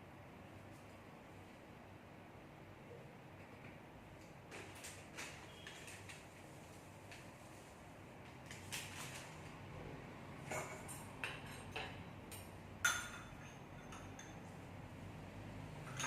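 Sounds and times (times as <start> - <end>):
kitchenware clinking and knocking: 10.5 - 12.0, 12.8 - 14.4.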